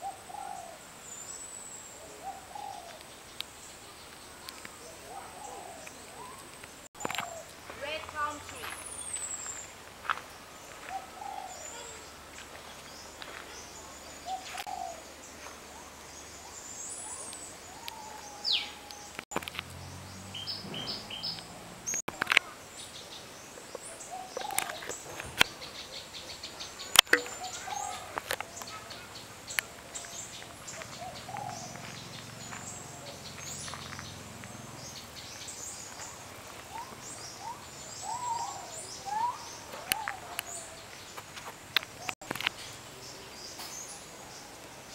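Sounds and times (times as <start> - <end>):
birds calling and chirping: 0.0 - 44.9.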